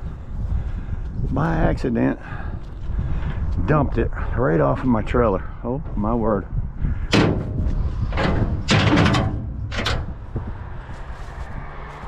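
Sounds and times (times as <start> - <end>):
scrap metal banging and scraping: 7.0 - 11.4.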